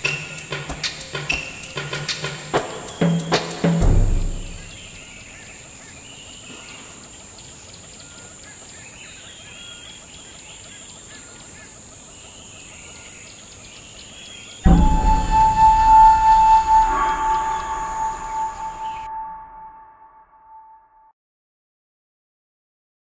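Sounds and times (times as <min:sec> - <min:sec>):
steady hiss: 0:00.0 - 0:09.0
faint bird chirps: 0:00.0 - 0:20.7
drum hit: 0:02.6 - 0:05.0, 0:14.7 - 0:19.2
constant high drone: 0:14.7 - 0:20.3.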